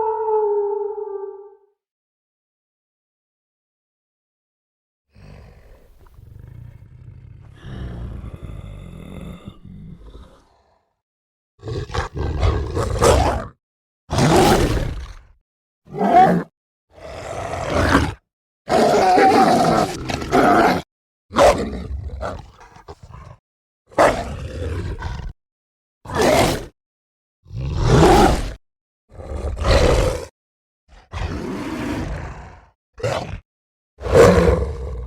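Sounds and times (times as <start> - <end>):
monster roars and snarls: 0.0 - 1.5.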